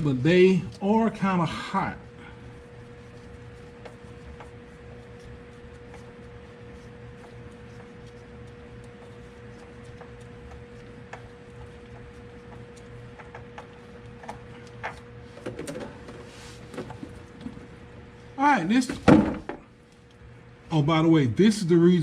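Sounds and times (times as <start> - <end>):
steady tonal hum: 0.0 - 22.0.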